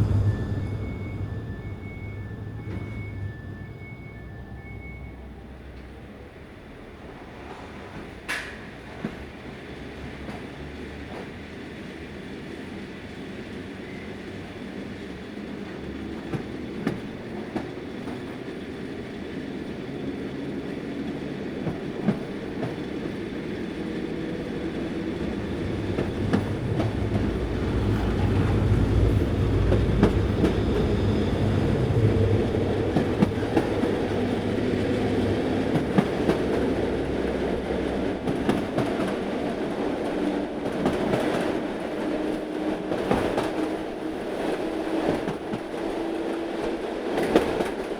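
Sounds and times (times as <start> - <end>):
train running on rails: 0.0 - 47.9
wheels clacking over rail joints: 20.8 - 47.9.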